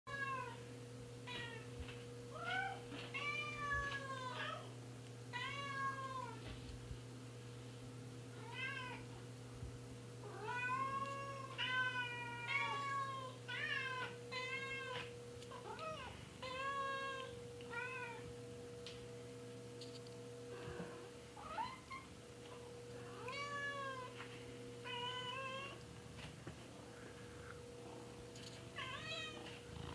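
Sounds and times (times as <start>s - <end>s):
steady low hum: 0.1s - 29.9s
cats meowing: 10.3s - 18.3s, 23.2s - 25.8s.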